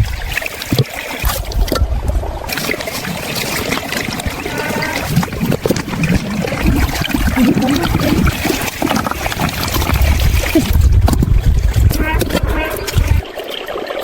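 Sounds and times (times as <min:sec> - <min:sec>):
water trickling and splashing: 0:00.0 - 0:14.0
heavy low rumble: 0:09.1 - 0:13.2.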